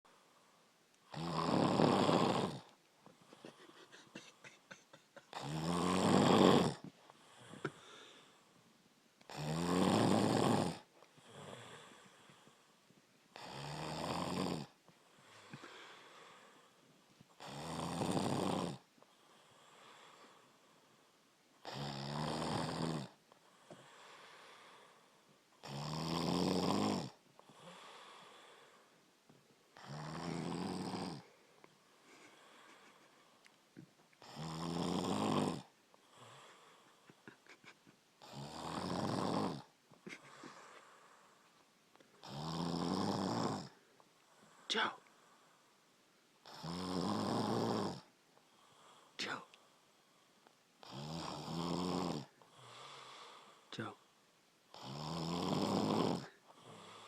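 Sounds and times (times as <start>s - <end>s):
man snoring: 1.1s - 2.7s, 3.4s - 8.3s, 9.3s - 12.4s, 13.4s - 16.6s, 17.4s - 18.8s, 21.6s - 24.9s, 25.6s - 28.8s, 29.8s - 31.4s, 34.2s - 37.2s, 38.2s - 41.2s, 42.2s - 43.8s, 46.4s - 49.5s, 50.8s - 54.0s, 54.7s - 57.0s
faint breathing: 6.8s - 8.8s, 11.2s - 12.8s, 15.0s - 17.0s, 23.4s - 25.4s, 27.4s - 29.1s, 31.2s - 33.6s, 35.9s - 37.7s, 40.0s - 42.2s, 52.4s - 54.0s.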